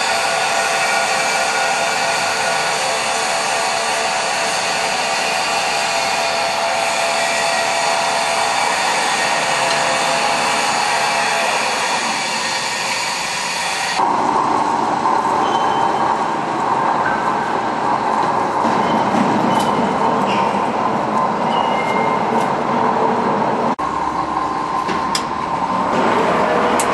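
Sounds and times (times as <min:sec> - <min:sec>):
lathe running with loud hiss: 0:00.0 - 0:15.4.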